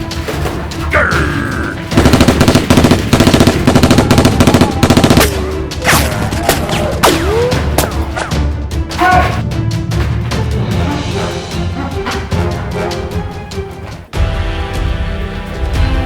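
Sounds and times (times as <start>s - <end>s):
background music: 0.0s - 16.0s
automatic gunfire: 1.9s - 5.4s.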